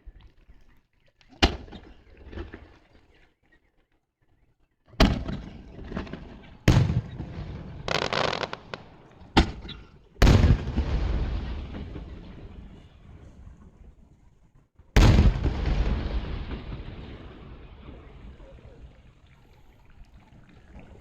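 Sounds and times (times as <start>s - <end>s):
fireworks booming: 5.0s - 13.9s, 15.0s - 18.9s
fireworks crackling: 6.7s - 9.4s, 15.0s - 18.7s.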